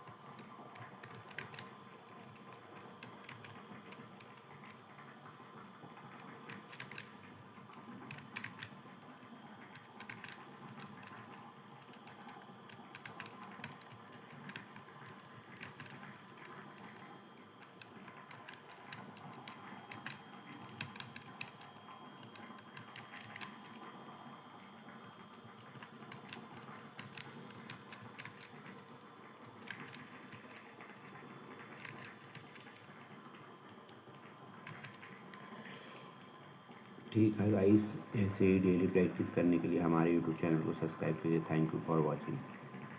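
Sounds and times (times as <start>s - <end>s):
computer keyboard key clicks: 0.4s - 4.4s, 6.5s - 7.1s, 8.1s - 8.7s, 9.7s - 16.1s, 17.8s - 23.7s, 25.6s - 28.8s, 29.6s - 30.6s, 31.8s - 32.8s, 34.6s - 35.1s.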